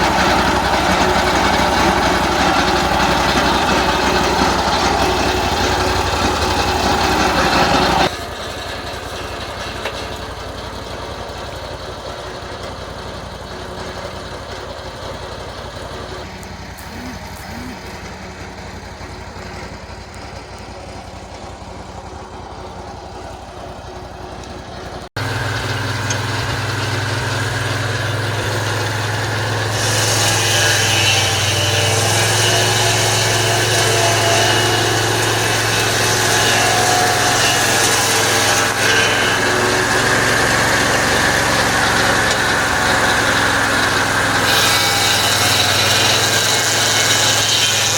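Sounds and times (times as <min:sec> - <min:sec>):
sawmill engine running: 0:00.0 - 0:47.9
strong steady hum: 0:16.0 - 0:45.6.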